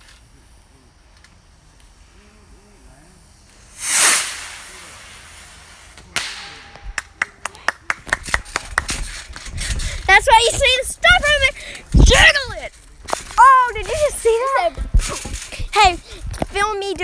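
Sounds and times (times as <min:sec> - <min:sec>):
rocket whoosh and hiss: 0:00.0 - 0:16.6
sharp pop: 0:03.6 - 0:10.0.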